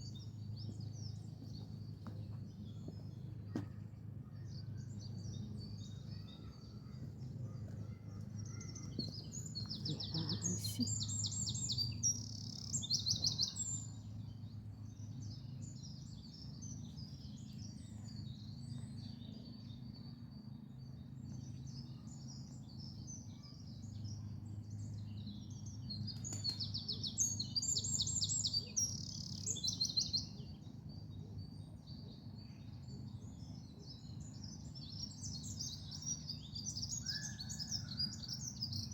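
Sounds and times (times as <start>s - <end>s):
low background rumble: 0.0s - 29.3s
bird trilled song: 0.0s - 38.9s
songbirds chirping: 0.0s - 38.9s.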